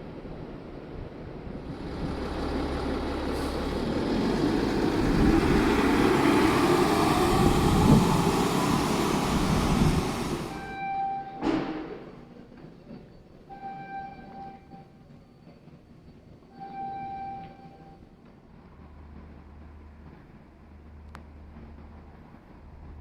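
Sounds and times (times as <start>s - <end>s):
large vehicle passing: 1.6s - 10.6s
short beep: 10.5s - 11.8s.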